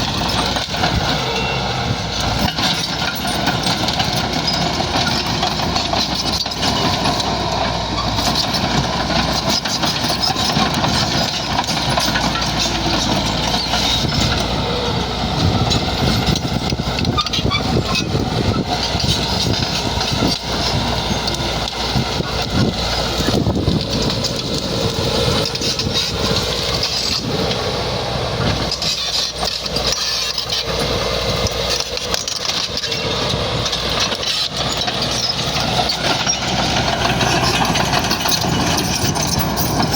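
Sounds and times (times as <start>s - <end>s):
knocks and clanks: 0.0s - 14.6s, 31.4s - 39.9s
bulldozer diesel engine running: 0.0s - 39.9s.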